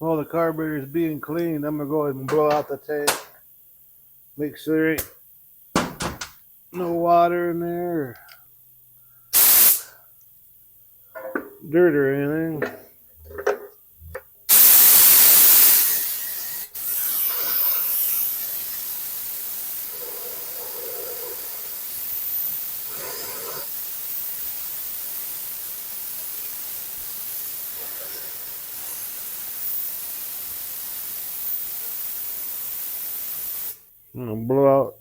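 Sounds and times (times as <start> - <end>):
compressed air blow gun hissing: 4.6 - 10.2, 14.5 - 33.9.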